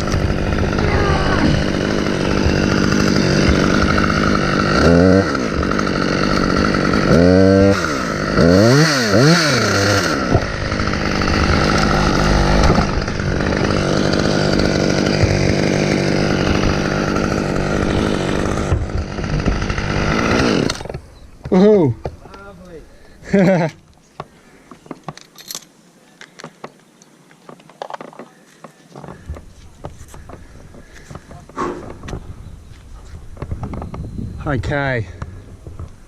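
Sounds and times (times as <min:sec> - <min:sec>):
chainsaw cutting a branch: 0:00.0 - 0:21.7.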